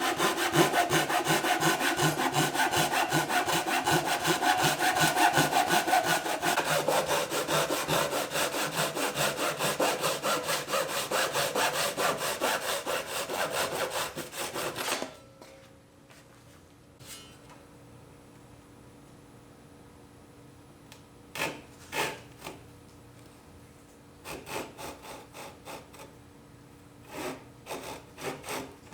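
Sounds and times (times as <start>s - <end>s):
hand tool scraping wood: 0.0s - 15.1s, 27.1s - 28.8s.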